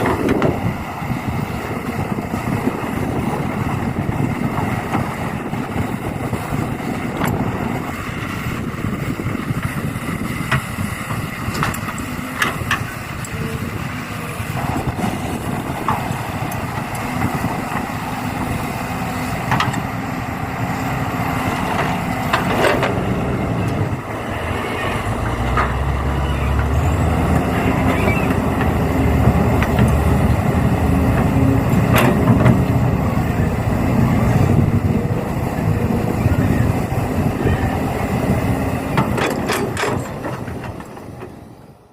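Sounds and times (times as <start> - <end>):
truck and excavator engines: 0.0 - 41.9
deeper louder engine note: 19.7 - 40.3.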